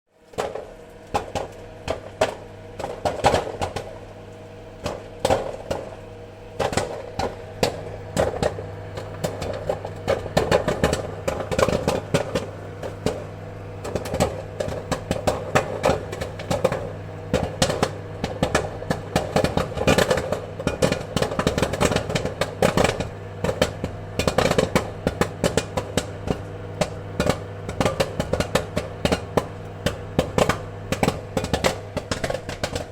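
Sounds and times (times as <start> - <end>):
steady low hum: 0.2 - 32.9
popcorn kernels popping: 0.3 - 32.9.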